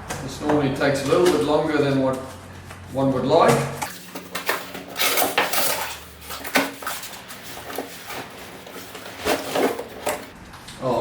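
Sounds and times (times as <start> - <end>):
knocks and scrapes: 3.8 - 10.4
cardboard packaging rustling: 3.9 - 10.4.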